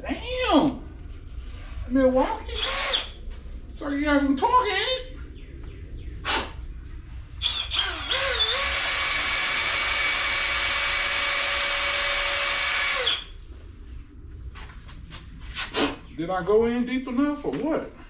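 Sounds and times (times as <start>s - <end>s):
electric drill whining: 2.6s - 3.1s, 7.4s - 13.3s.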